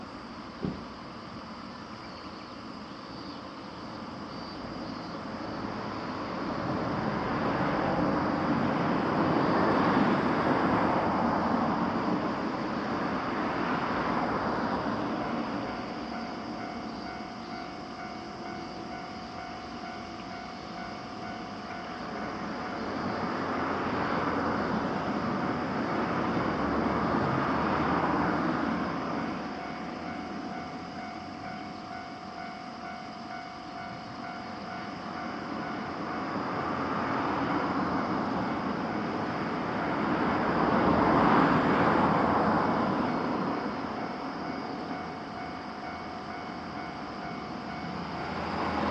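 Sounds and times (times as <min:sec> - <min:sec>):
level crossing warning bell: 0:11.4 - 0:48.9.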